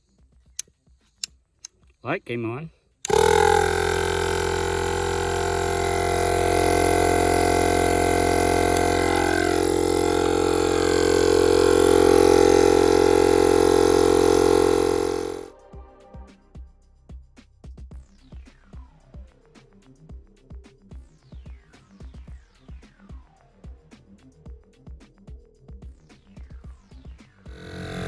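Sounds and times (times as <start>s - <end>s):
portable tire inflator running: 3.1s - 15.5s, 27.5s - 28.0s.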